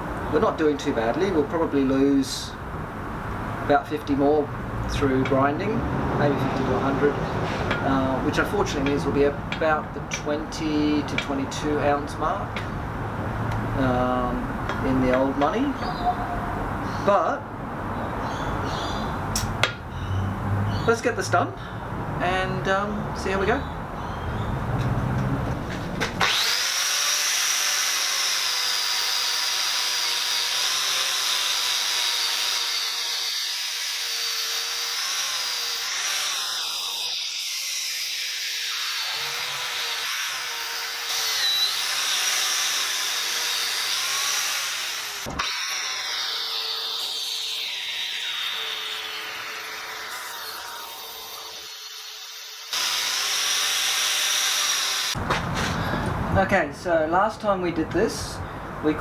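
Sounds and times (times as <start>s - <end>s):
power grinder grinding iron: 3.8s - 12.8s, 24.8s - 56.1s.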